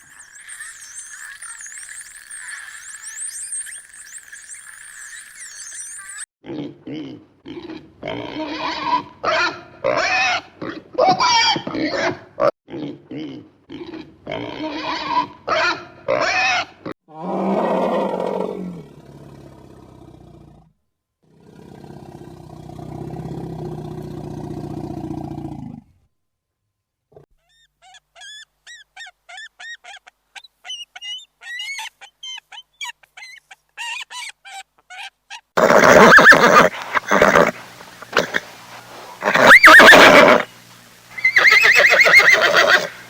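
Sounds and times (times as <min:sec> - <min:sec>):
short chirps: 0:00.0 - 0:06.3
long loud animal call: 0:39.2 - 0:40.5, 0:41.2 - 0:43.0
short pitched animal calls: 0:41.2 - 0:43.0.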